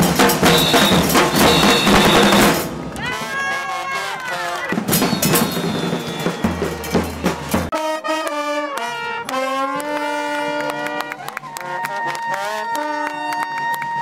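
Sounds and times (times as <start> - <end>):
drums: 0.0 - 7.8
brass instruments playing melody: 0.0 - 13.5.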